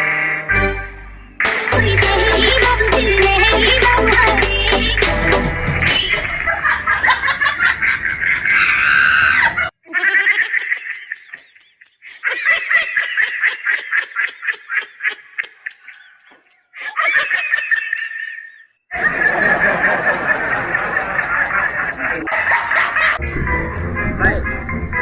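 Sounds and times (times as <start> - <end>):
high-pitched laughter: 6.0 - 23.2.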